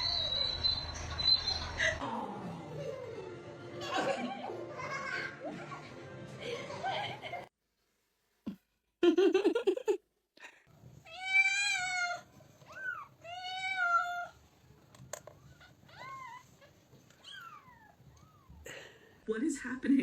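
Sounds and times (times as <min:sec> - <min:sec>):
cat meowing: 0:11.1 - 0:14.4, 0:17.2 - 0:18.6.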